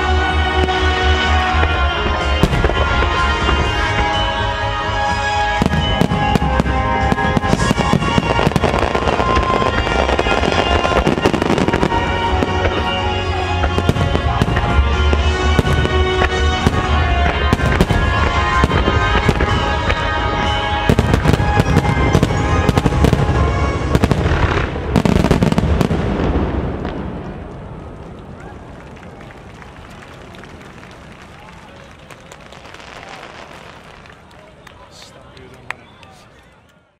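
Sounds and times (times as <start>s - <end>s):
music: 0.0s - 26.3s
fireworks bursting: 0.0s - 35.2s.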